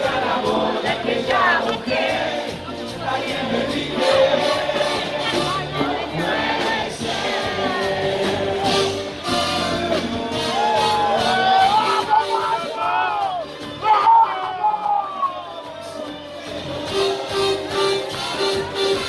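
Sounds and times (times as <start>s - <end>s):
music with singing: 0.0s - 19.0s
people shouting: 10.4s - 16.0s.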